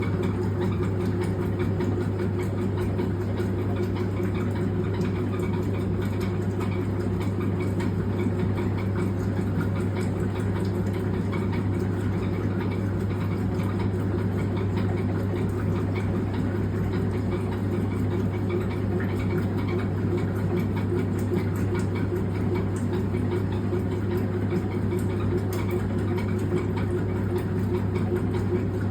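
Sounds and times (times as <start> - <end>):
washing machine motor hum: 0.0 - 28.9
washing machine squeaking: 0.0 - 28.9.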